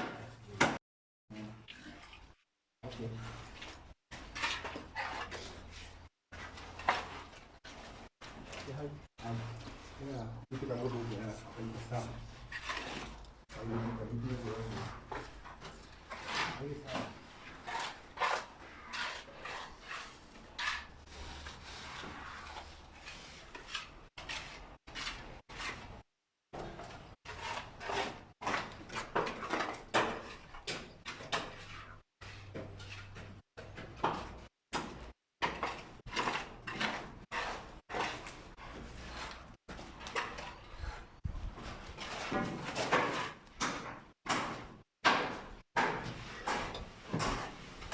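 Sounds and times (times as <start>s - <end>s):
plastering tools scraping and knocking: 2.8s - 47.9s.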